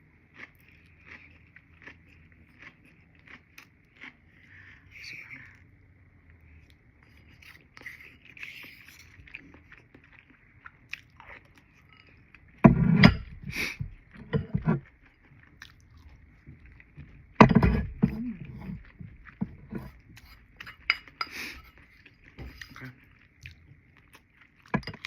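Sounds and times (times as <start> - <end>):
close-up chewing and mouth sounds: 0.0 - 25.0.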